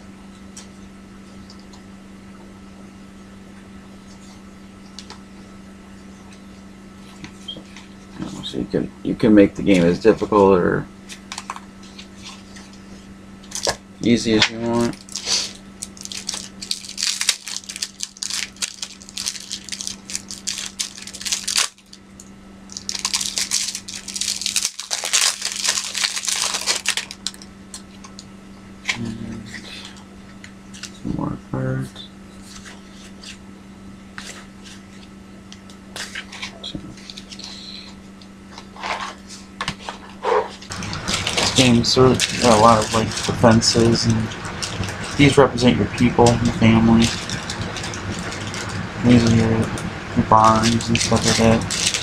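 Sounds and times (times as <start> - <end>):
low electrical hum: 0.0 - 52.0
cards being handled: 22.7 - 28.2, 36.0 - 52.0.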